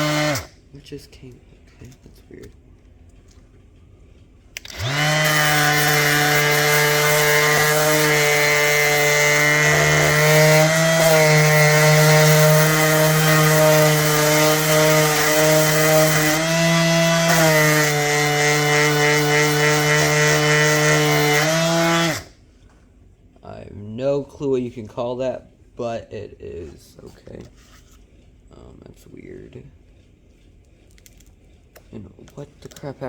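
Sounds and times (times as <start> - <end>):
electric sander on metal: 0.0 - 0.5, 4.6 - 22.3.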